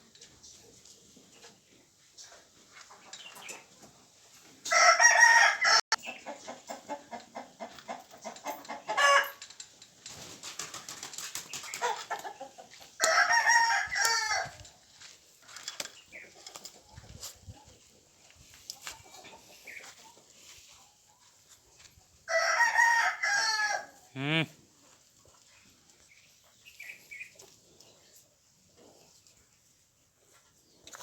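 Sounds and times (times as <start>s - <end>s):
rooster crowing: 4.7s - 5.9s, 13.0s - 14.6s, 22.3s - 24.0s.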